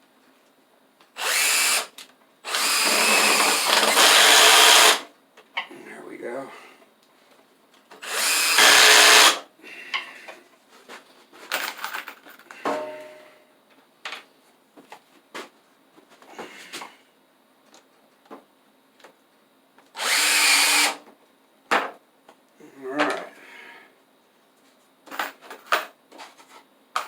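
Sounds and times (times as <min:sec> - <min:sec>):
power drill driving screws: 0:01.2 - 0:01.9, 0:02.5 - 0:05.1, 0:08.0 - 0:09.4, 0:20.0 - 0:21.0.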